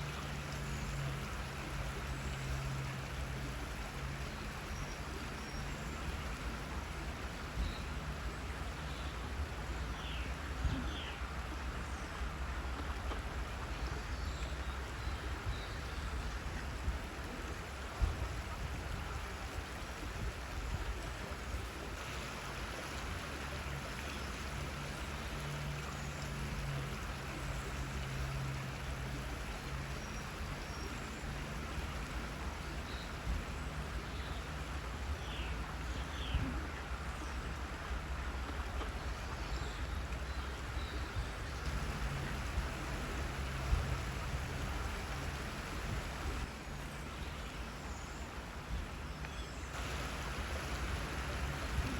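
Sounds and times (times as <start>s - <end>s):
waterfall rushing: 41.6s - 47.3s, 49.8s - 51.9s.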